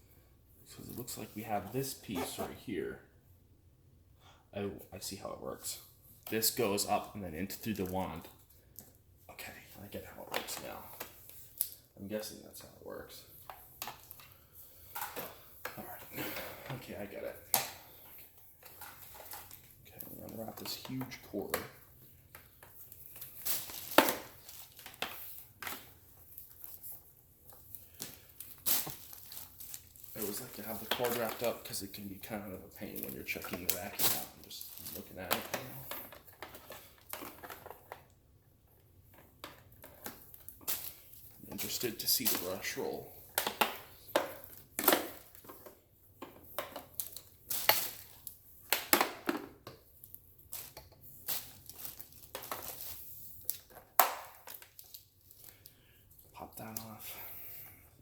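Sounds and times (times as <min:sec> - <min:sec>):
packaging crinkling: 0:27.5 - 0:31.8, 0:50.0 - 0:55.8
plastic parts clicking and knocking: 0:43.3 - 0:49.8, 0:50.5 - 0:52.9.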